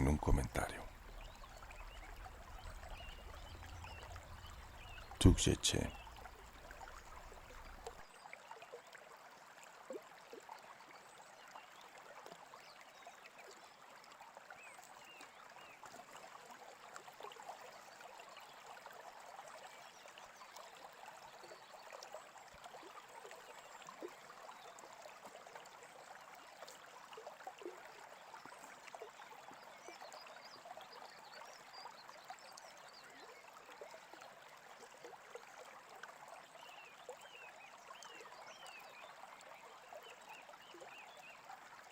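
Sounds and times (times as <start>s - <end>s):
birds chirping: 0.0s - 8.0s
faint brook babbling: 0.0s - 41.9s.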